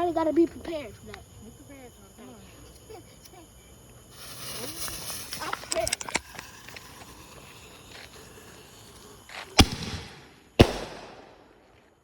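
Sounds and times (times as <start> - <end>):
firework hiss: 1.5 - 11.7
loud sharp firework bangs: 9.3 - 11.7.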